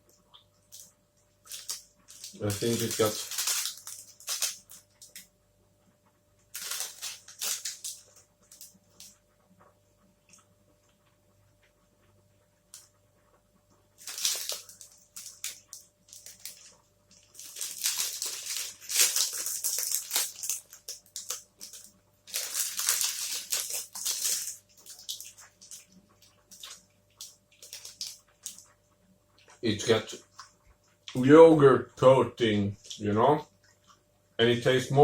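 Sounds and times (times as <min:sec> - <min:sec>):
chewing protein bar: 0:14.0 - 0:28.8.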